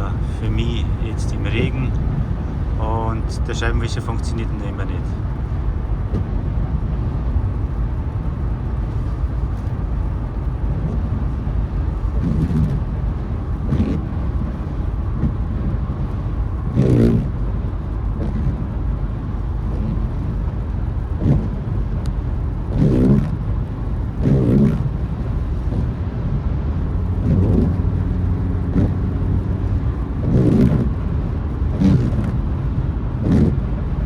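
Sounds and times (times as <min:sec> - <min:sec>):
road noise inside car: 0:00.0 - 0:34.0
wiper blades squeaking on glass: 0:12.1 - 0:17.3.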